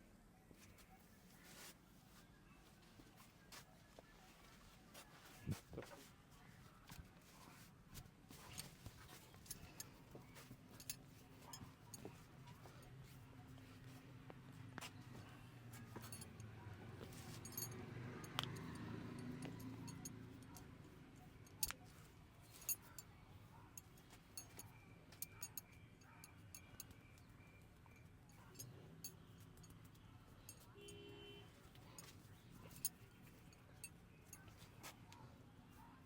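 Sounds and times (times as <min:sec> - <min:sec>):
faint low murmur: 0:00.0 - 0:36.0.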